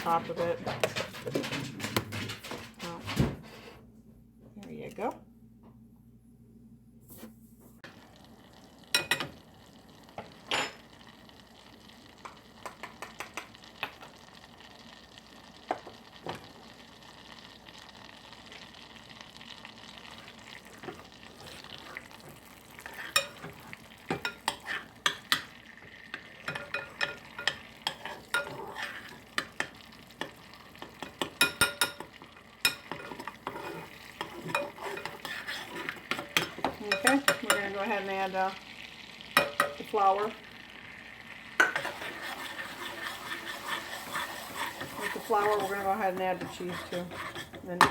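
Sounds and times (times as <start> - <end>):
butter sizzling in a pan: 7.8 - 47.9
utensil clicking against pan: 12.2 - 14.0.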